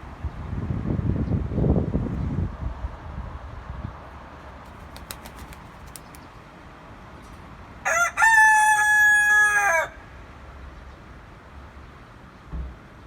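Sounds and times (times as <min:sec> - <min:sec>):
rooster crowing: 0:07.8 - 0:10.1.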